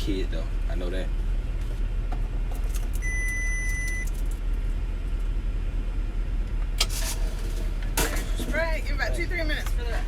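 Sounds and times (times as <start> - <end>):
high beep: 3.0 - 4.1.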